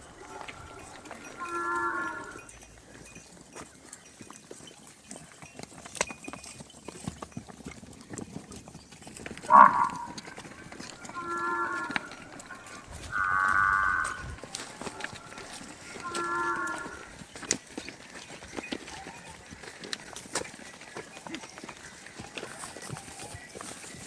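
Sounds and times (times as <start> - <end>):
water buffalo lowing: 0.0 - 3.2, 9.4 - 17.4.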